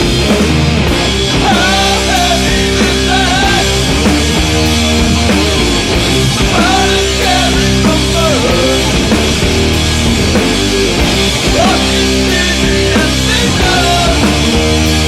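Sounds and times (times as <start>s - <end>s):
distorted guitars: 0.0s - 15.0s
drum beat: 0.0s - 15.0s
person singing: 1.3s - 4.2s, 6.4s - 9.3s, 11.5s - 15.0s.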